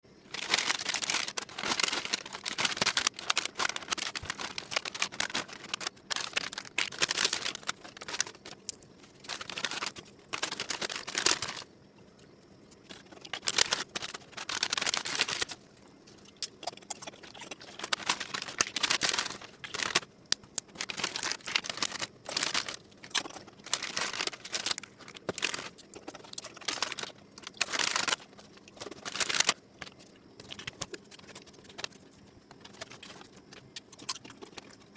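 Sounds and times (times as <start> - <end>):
plastic snack packets crinkling: 0.3 - 11.7, 12.7 - 34.9.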